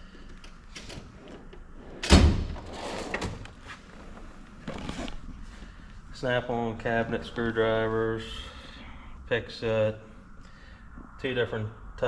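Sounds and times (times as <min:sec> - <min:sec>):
drawer sliding on runners: 0:04.6 - 0:05.2.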